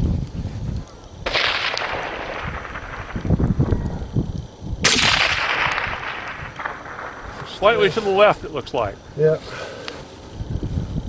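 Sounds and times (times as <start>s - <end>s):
rifle shots with rolling echo: 1.2s - 8.9s.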